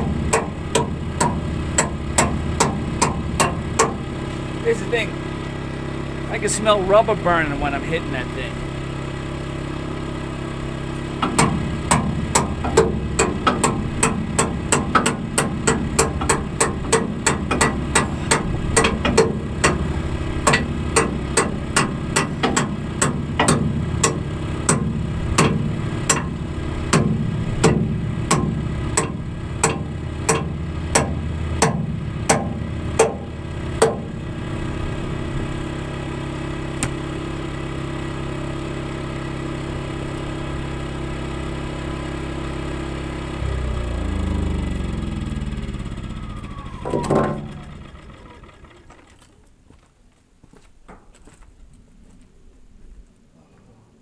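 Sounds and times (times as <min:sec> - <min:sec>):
hammer striking steel: 0:00.0 - 0:04.0, 0:11.2 - 0:34.1
generator engine running: 0:00.0 - 0:49.8.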